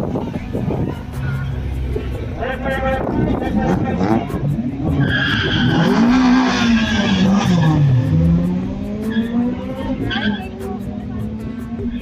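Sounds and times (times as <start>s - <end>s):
car engines revving: 0.0s - 12.0s
tyres squealing: 4.8s - 8.0s.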